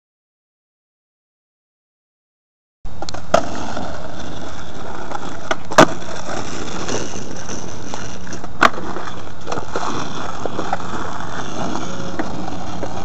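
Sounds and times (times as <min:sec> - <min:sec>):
skateboard wheels rolling on pavement: 0:02.9 - 0:13.0
skateboard clacks: 0:03.0 - 0:13.0.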